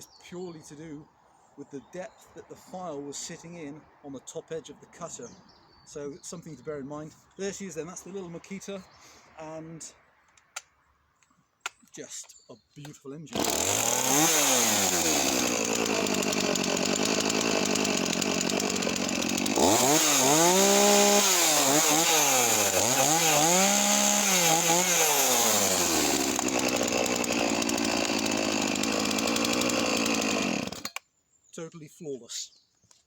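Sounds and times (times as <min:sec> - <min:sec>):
chainsaw engine idling and revving: 0:13.3 - 0:31.0.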